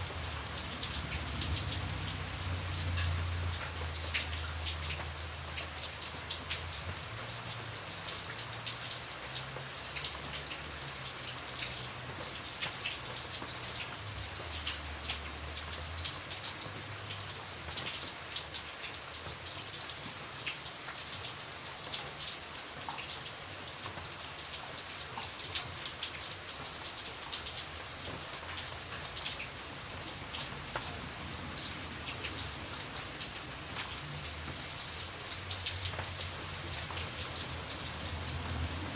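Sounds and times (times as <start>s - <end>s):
light rain falling: 0.0s - 38.9s.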